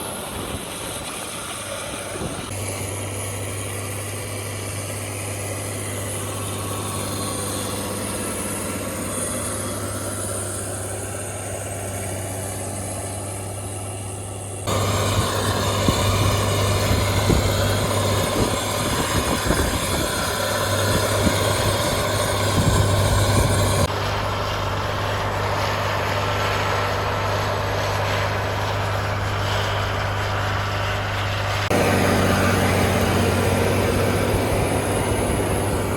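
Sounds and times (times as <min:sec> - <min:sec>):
tractor diesel engine running: 0:00.0 - 0:35.9.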